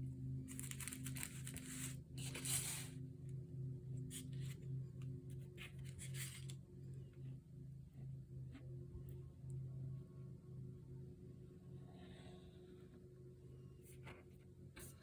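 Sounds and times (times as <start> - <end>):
soft background music: 0.0 - 15.0
paper rustling and crinkling: 0.5 - 3.0.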